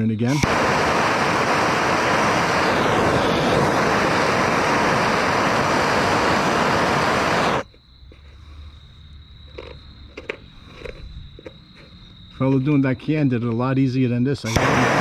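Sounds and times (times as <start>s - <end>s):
propane torch flame hissing: 0.3s - 7.6s, 14.5s - 15.0s.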